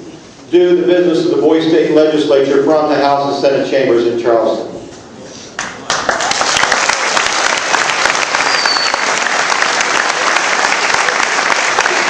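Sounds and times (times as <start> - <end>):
audience applauding: 5.6 - 12.0
short high whistle: 8.4 - 9.1.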